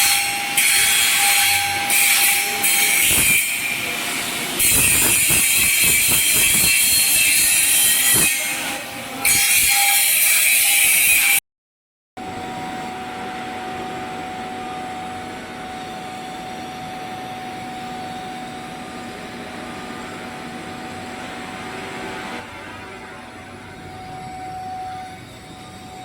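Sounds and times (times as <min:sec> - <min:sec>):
welding arc hissing and whining: 0:00.0 - 0:11.4.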